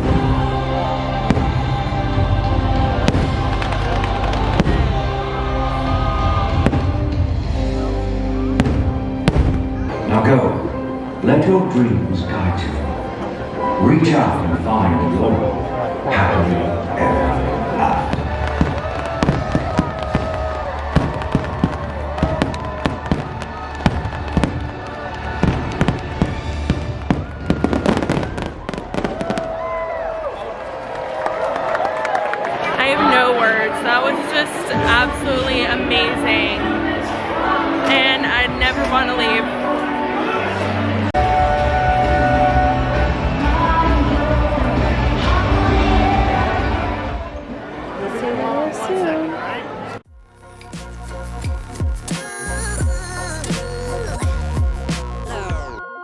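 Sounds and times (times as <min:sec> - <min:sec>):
loud music: 0:00.0 - 0:29.0, 0:32.8 - 0:47.4, 0:50.1 - 0:56.0
fireworks banging: 0:02.7 - 0:05.1, 0:08.6 - 0:10.0, 0:18.1 - 0:29.8.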